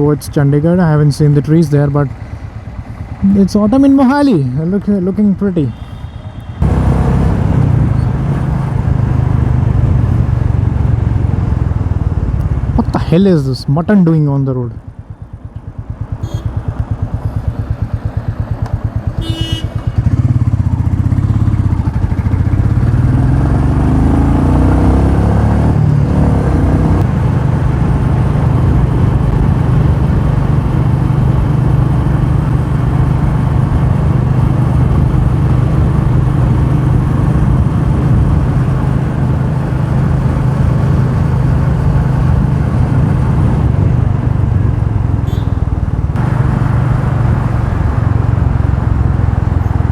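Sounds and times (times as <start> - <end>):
motorcycle engine accelerating: 6.6 - 13.0, 14.9 - 49.9
wind on microphone: 25.6 - 49.9.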